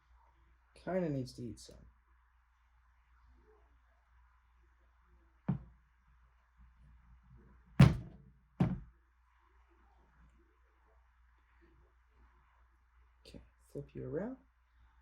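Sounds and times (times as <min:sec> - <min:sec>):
knocks on a hard surface: 0:05.5 - 0:05.7, 0:07.8 - 0:08.9.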